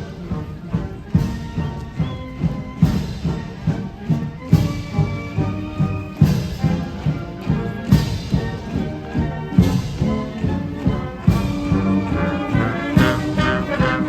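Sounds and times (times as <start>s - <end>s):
brass holding notes: 0.0s - 14.0s.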